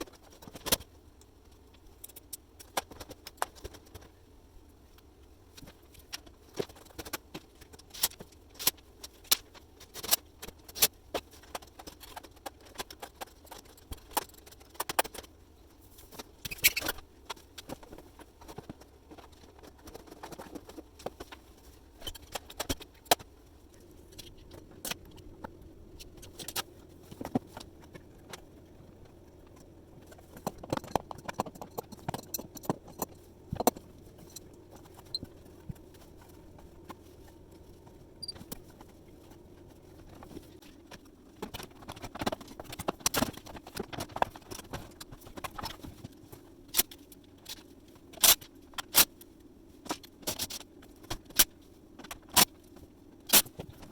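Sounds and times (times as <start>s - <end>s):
faint steady hum: 0.0s - 53.9s
parts and tools clattering: 30.1s - 36.3s.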